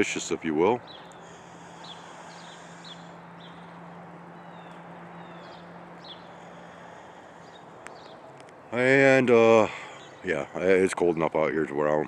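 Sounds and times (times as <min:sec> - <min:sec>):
low hum: 0:00.2 - 0:08.8
small bird chirping: 0:00.8 - 0:08.8.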